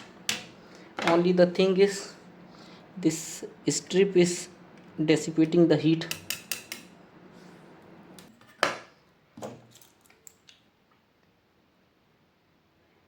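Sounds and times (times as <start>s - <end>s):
small tools tapping on metal: 6.1s - 6.9s.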